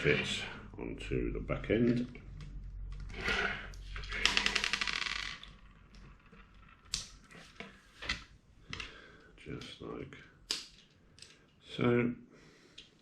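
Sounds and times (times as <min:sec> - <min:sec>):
plastic parts clicking and rattling: 0:01.9 - 0:08.9, 0:10.5 - 0:11.6.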